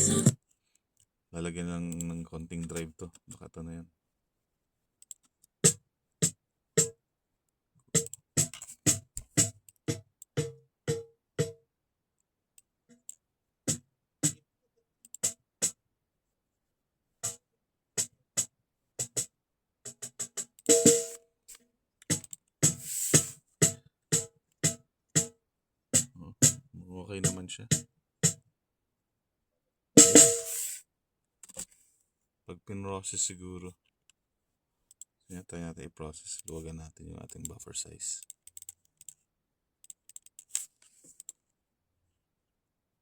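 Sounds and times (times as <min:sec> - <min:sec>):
snare drum strikes: 0:30.0 - 0:30.7.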